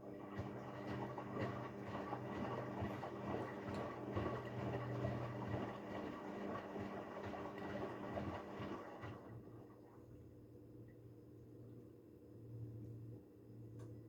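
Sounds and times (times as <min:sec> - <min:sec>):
washing machine motor hum: 0:00.0 - 0:10.2.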